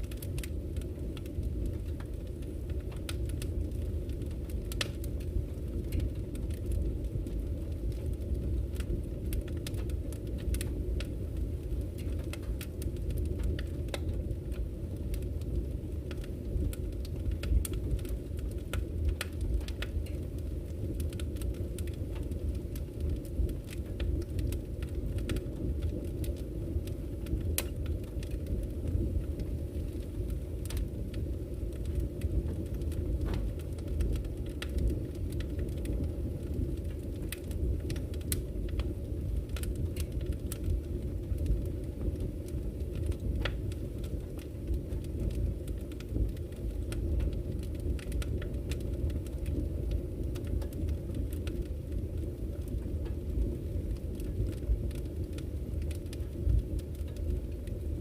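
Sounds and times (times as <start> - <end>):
wood fire crackling and popping: 0.0 - 58.0.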